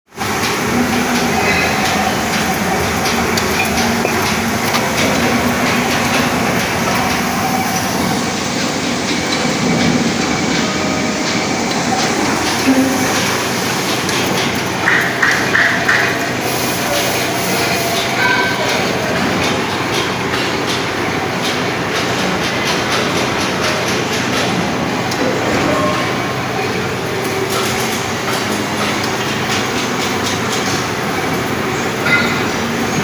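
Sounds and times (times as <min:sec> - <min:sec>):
metal lathe machining: 0:00.1 - 0:33.0.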